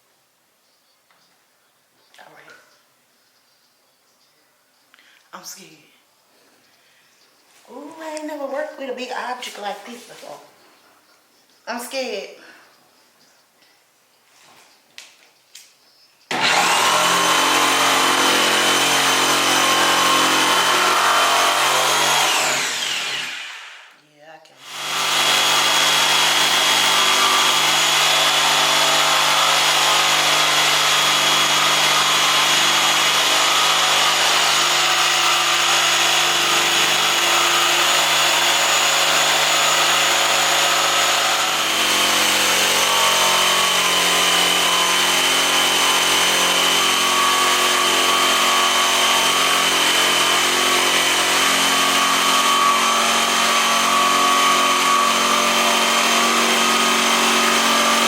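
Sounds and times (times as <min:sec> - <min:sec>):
power saw cutting wood: 0:16.3 - 0:24.0, 0:24.6 - 0:58.0.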